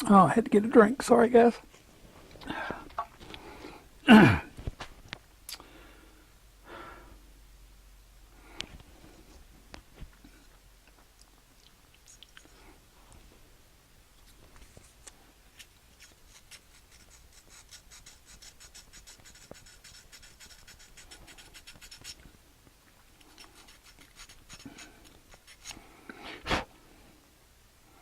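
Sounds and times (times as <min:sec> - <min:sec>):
faint scratching and rubbing: 0:14.2 - 0:22.3, 0:23.3 - 0:25.8.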